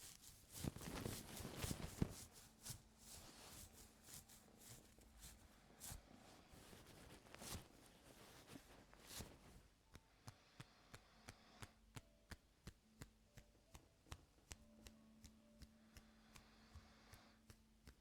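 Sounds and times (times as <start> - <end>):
soft brushing rustles: 0.0 - 9.8.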